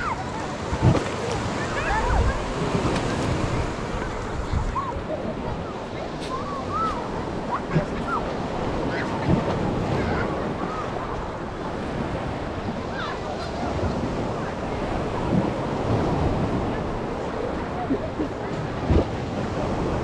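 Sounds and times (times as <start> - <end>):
faint distant voices: 0.0 - 20.0
sea waves washing: 0.0 - 20.0
wind buffeting microphone: 0.0 - 20.0.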